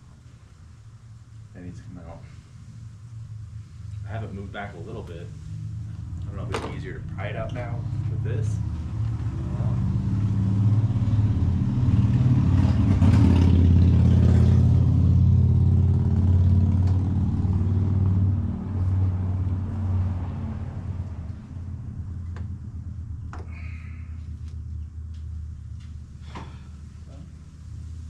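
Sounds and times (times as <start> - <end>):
vehicle engine humming: 0.0 - 28.0.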